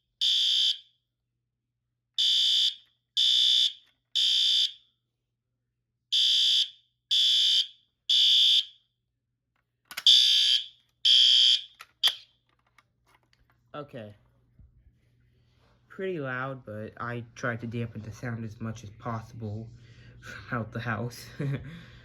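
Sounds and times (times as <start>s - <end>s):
fire alarm horn blasts: 0.0s - 0.9s, 2.2s - 4.9s, 6.1s - 8.8s, 10.0s - 12.2s.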